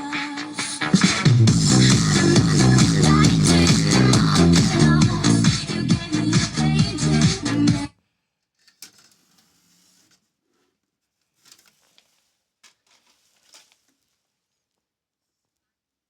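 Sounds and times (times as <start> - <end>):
electronic dance music on car radio: 0.0 - 7.9.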